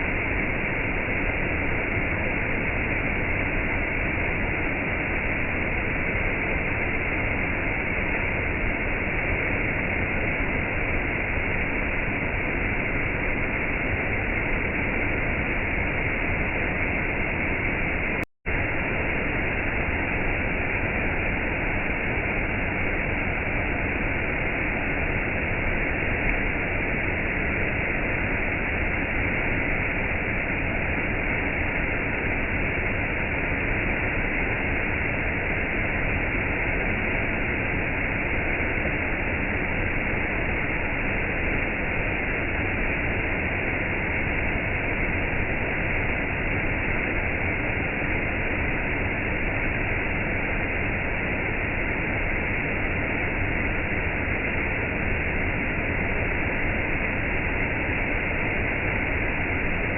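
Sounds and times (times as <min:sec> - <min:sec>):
rain: 0:15.8 - 0:59.9
waterfall: 0:18.6 - 0:59.9.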